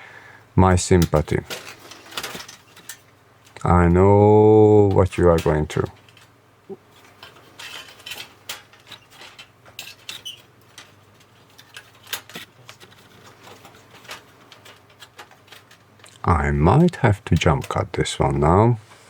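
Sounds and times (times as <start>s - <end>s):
metal plate clicks and scrapes: 6.9s - 16.2s.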